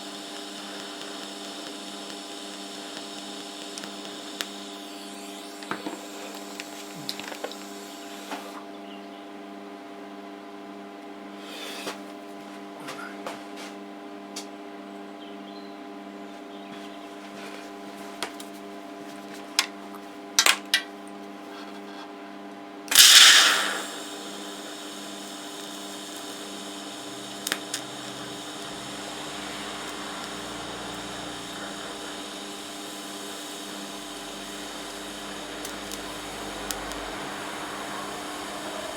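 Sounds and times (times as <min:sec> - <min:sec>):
loud hiss: 0:00.0 - 0:08.6, 0:22.9 - 0:38.9
welder buzzing with crackles: 0:00.0 - 0:08.7, 0:22.9 - 0:38.9.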